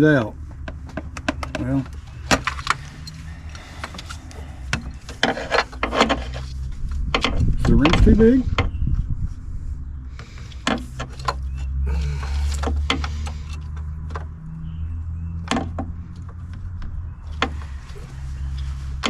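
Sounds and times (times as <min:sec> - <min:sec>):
low rumble: 0:00.3 - 0:10.6.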